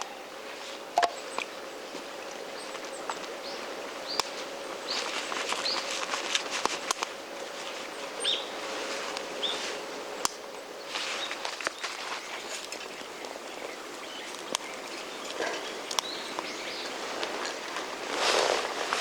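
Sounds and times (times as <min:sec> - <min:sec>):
campfire crackling and popping: 0:12.6 - 0:18.0.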